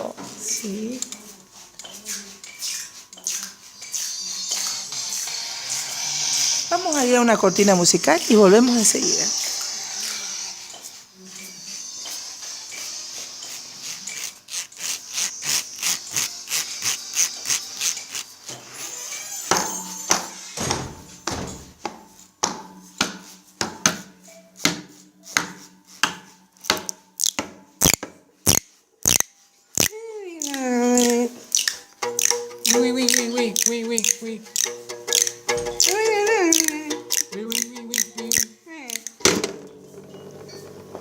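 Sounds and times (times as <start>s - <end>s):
scraping rasping sound: 1.8s - 20.6s, 24.2s - 39.2s
percussion strikes on objects: 19.5s - 40.8s.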